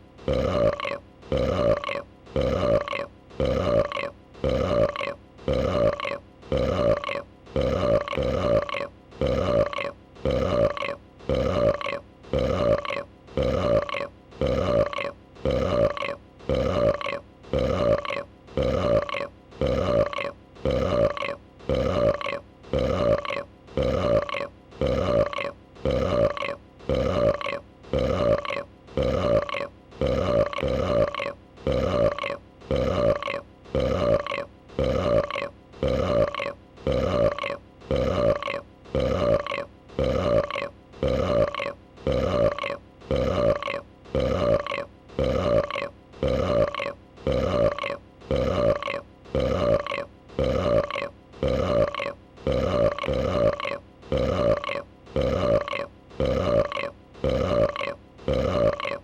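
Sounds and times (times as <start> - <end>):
dragon burp sound effect: 0.2 - 59.0.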